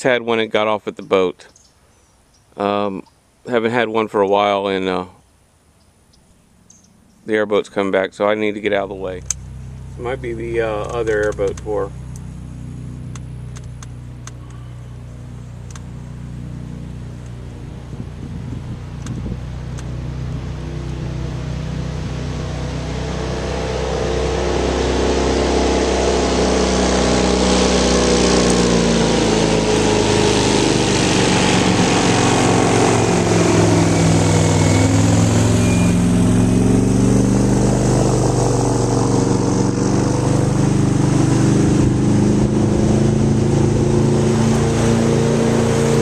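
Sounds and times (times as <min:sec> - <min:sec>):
airboat engine and propeller: 0:06.0 - 0:46.0.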